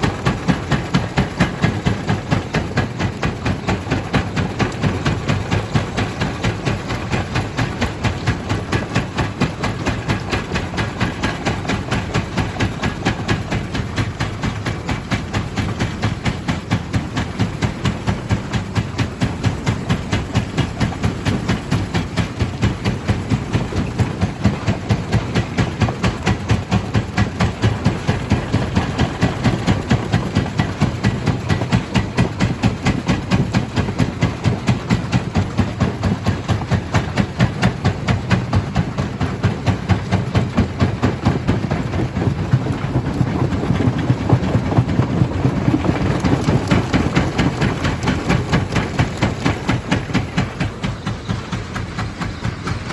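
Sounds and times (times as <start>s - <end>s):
low machine hum: 0.0s - 52.9s.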